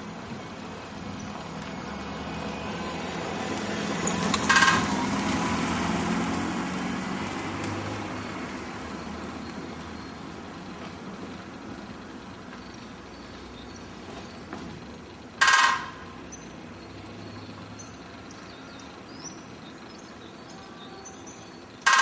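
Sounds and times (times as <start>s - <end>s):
woodpecker drumming on metal: 4.3s - 5.2s, 13.1s - 16.6s, 21.7s - 22.0s
steady background hum: 9.7s - 22.0s.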